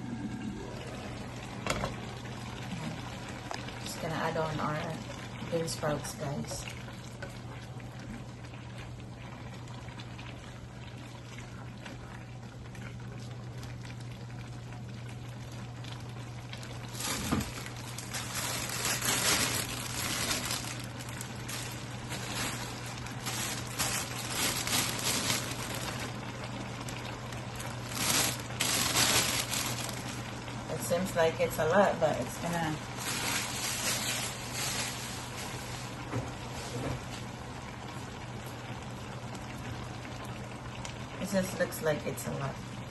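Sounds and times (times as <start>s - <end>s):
vegetables sizzling in a pan: 16.8s - 36.8s.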